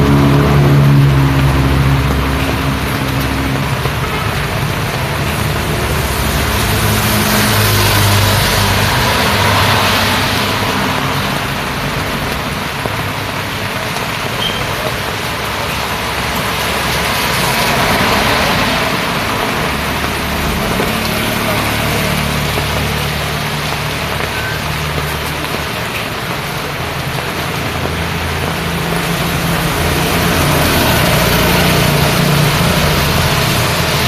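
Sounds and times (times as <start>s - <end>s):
rain on wet road: 0.0s - 34.0s
vehicle engine running low: 0.0s - 34.0s
vehicles swishing past: 0.0s - 34.0s.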